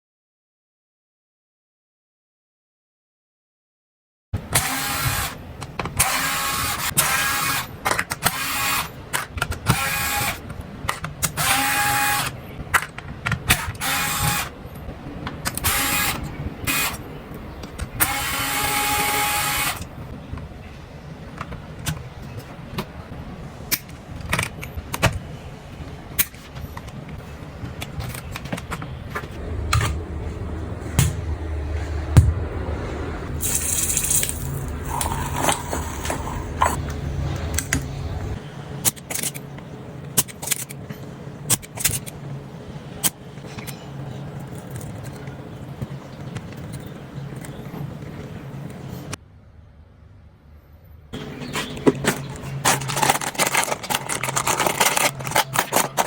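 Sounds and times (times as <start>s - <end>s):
handling clicks and knocks: 51.2s - 56.0s.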